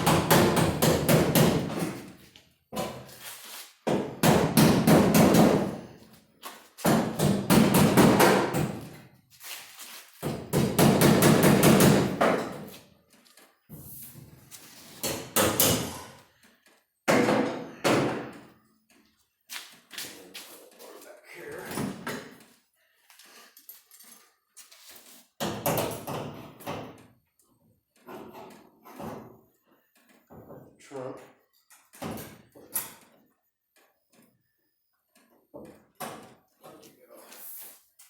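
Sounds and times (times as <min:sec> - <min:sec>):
hammer rapping on sheet metal: 0:00.0 - 0:02.0, 0:03.8 - 0:05.8, 0:06.8 - 0:08.8, 0:10.2 - 0:12.6.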